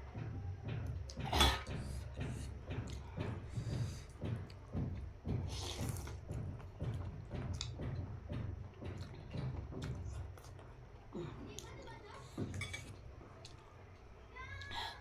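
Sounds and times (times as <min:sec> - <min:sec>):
slurping noodles: 0:05.5 - 0:06.2.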